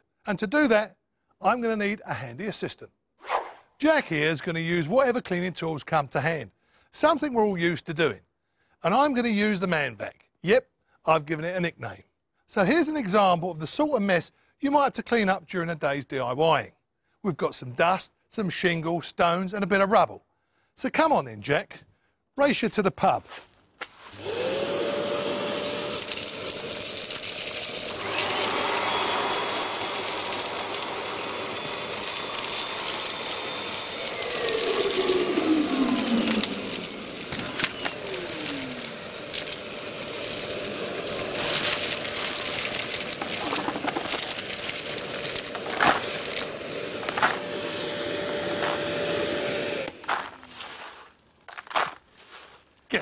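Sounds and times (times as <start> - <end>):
vacuum cleaner whining: 24.1 - 50.5
stones clicking and rattling: 41.4 - 46.4.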